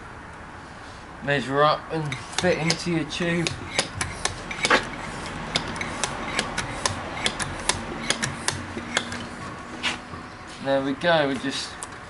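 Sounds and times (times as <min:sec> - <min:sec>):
bicycle pump clicking: 0:02.1 - 0:09.3.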